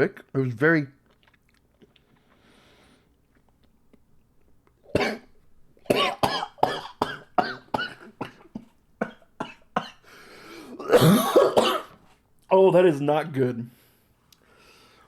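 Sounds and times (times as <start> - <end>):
man coughing: 4.9 - 5.3, 5.9 - 10.0, 10.7 - 12.0.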